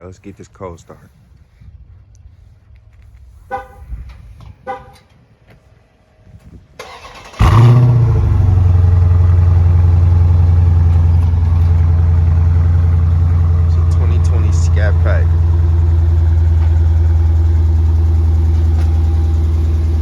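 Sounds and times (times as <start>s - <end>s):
car engine starting and idling: 6.8s - 20.0s.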